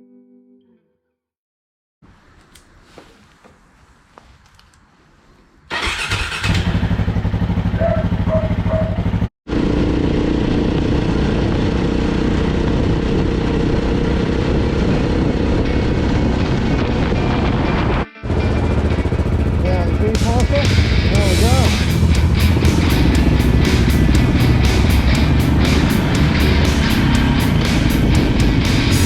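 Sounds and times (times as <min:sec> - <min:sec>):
motorcycle engine running: 0:05.8 - 0:29.0
wide noisy rush: 0:09.5 - 0:29.0.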